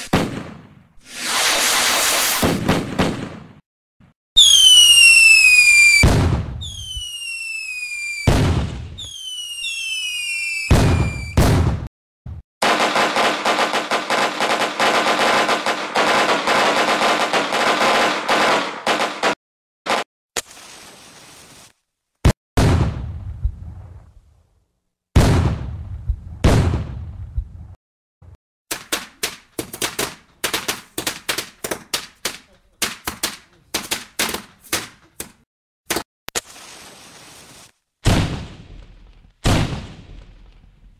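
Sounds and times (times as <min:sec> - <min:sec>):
firecracker bangs: 0:04.4 - 0:07.2, 0:08.2 - 0:09.2, 0:10.7 - 0:11.9
loud firecracker bang: 0:10.7 - 0:11.9.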